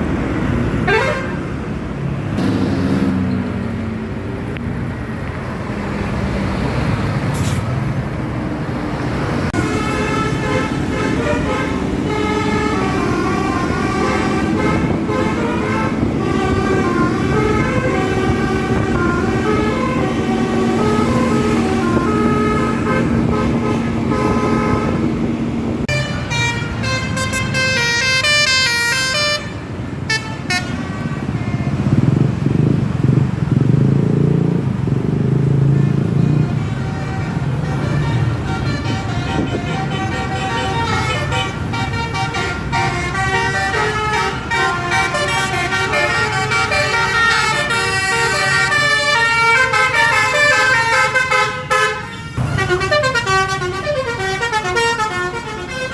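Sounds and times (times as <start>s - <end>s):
engine and traffic rumble: 0.0s - 55.9s
bus horn playing a tune: 0.8s - 1.5s, 9.6s - 31.4s, 36.4s - 55.9s.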